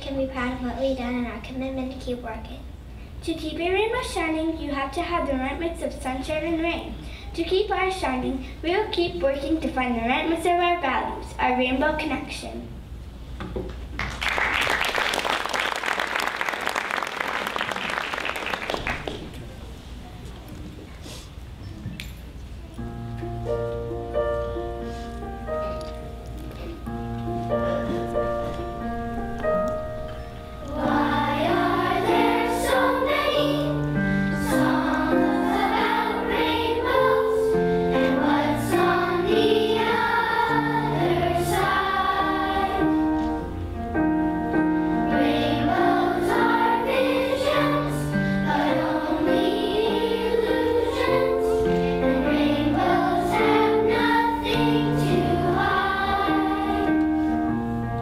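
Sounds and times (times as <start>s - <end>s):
instrumental accompaniment: 22.7s - 58.0s
children's choir singing: 26.8s - 57.7s.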